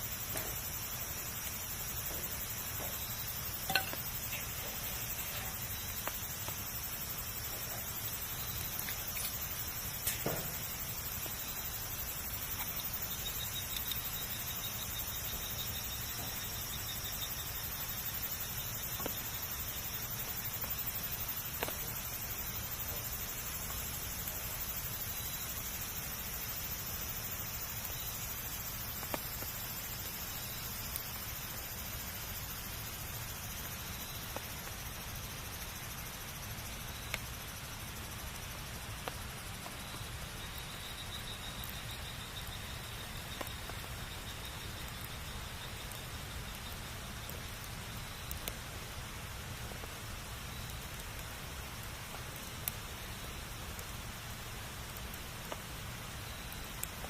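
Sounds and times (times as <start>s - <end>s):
campfire crackling and hissing: 0.0s - 57.0s.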